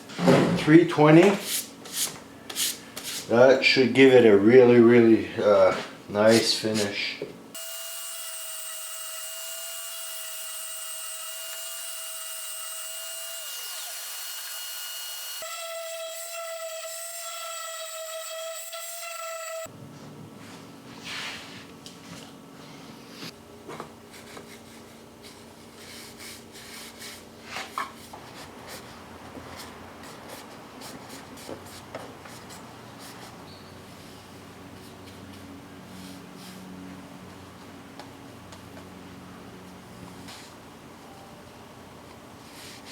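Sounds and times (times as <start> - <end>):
electric sander on wood: 7.6 - 15.4.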